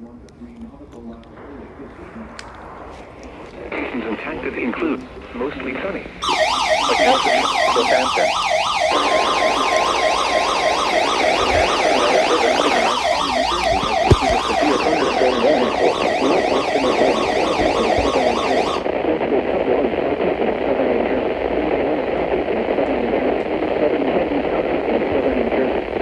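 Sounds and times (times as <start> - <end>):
steady alert tone: 6.2 - 18.8
electronic siren yelping: 6.2 - 18.9.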